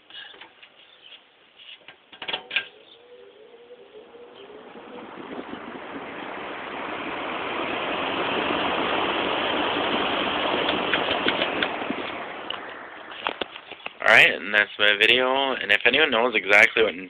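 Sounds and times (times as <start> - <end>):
box fan air rushing: 3.1 - 14.0.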